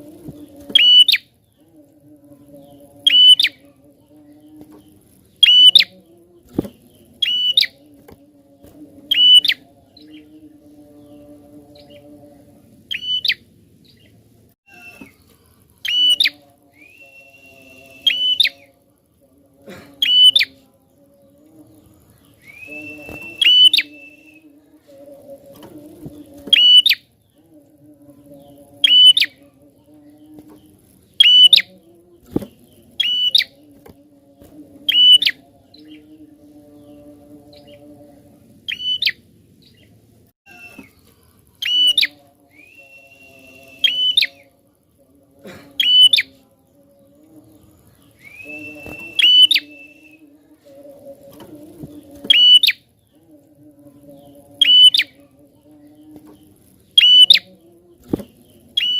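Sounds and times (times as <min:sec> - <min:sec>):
thin whistled bird notes: 0:05.4 - 0:06.0, 0:14.7 - 0:18.7, 0:22.3 - 0:24.5, 0:41.6 - 0:44.4, 0:48.1 - 0:50.2.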